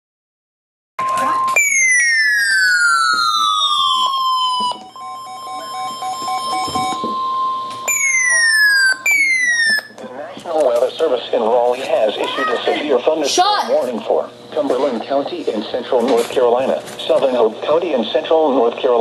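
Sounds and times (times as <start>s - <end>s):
steady single-pitch alert tone: 1.0s - 10.0s
electronic alert tone sliding downward: 1.2s - 9.9s
fast pulsing beep: 1.2s - 9.9s.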